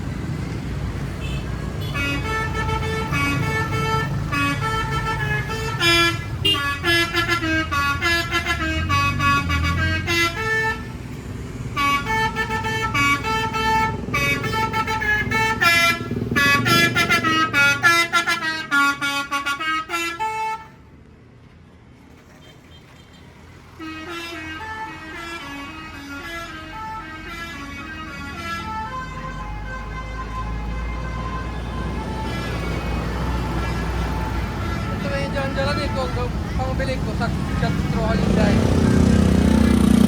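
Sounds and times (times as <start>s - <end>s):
bus engine running: 0.0s - 22.3s, 23.3s - 40.0s
multi-tone air horn melody: 1.2s - 11.0s, 11.8s - 20.8s, 23.8s - 36.6s.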